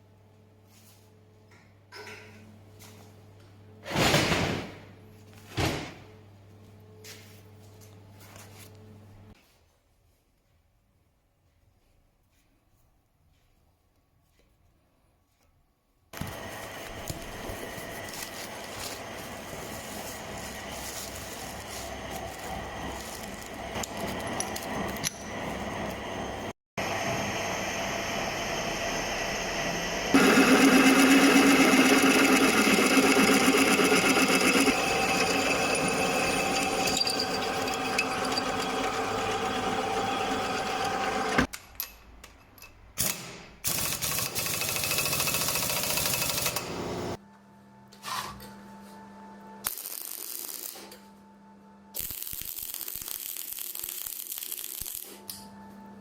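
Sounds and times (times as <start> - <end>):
workshop power tools running: 16.2 - 41.5, 43.0 - 47.2.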